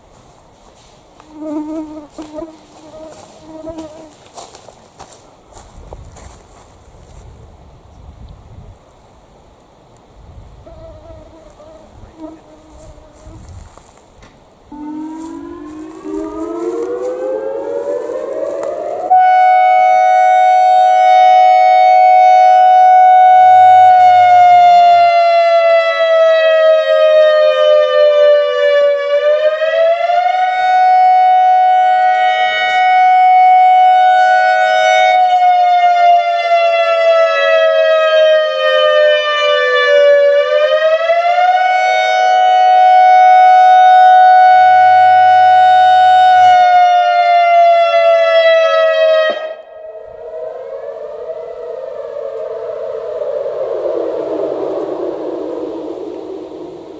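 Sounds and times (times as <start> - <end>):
electronic storm siren: 10.6 - 13.9, 14.7 - 56.9.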